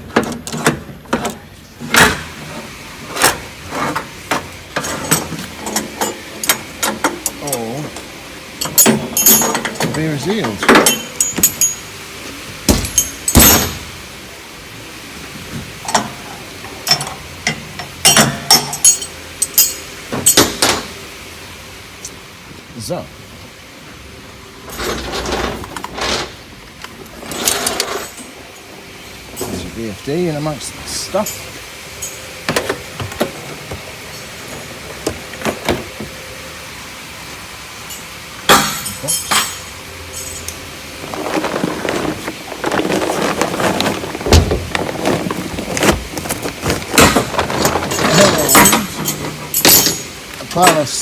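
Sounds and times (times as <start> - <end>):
faint steady hum: 0.0 - 51.0
knocks and clunks of handled equipment: 41.0 - 50.9.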